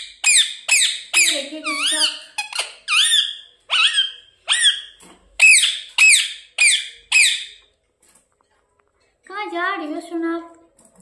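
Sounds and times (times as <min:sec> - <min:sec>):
parrot squawking: 0:00.0 - 0:07.6.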